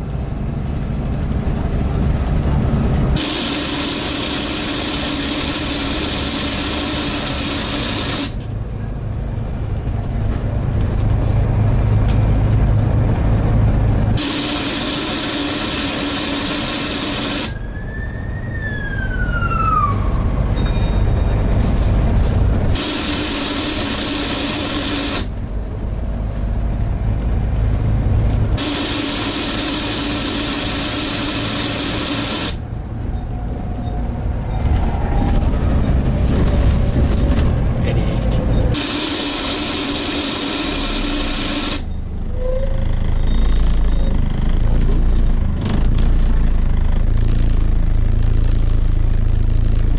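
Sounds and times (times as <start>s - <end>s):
diesel engine running: 0.0s - 49.9s
loud rushing suction hiss: 3.2s - 8.4s, 14.2s - 17.6s, 22.8s - 25.4s, 28.6s - 32.6s, 38.7s - 41.9s.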